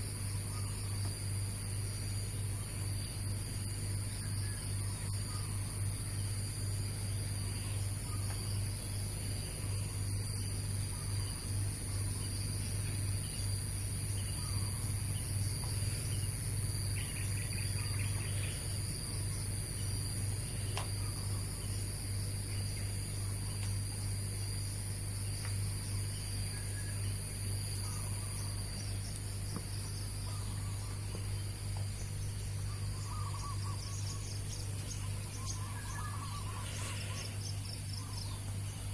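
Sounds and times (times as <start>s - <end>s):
high-pitched insect trilling: 0.0s - 38.9s
steady low hum: 0.0s - 38.9s
dove cooing: 32.6s - 34.4s, 35.2s - 37.3s.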